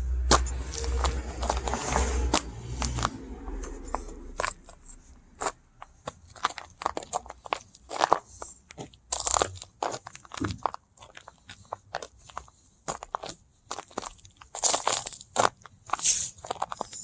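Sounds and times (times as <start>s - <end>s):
low rumble: 0.0s - 5.9s
frozen dirt crunching: 0.0s - 17.0s.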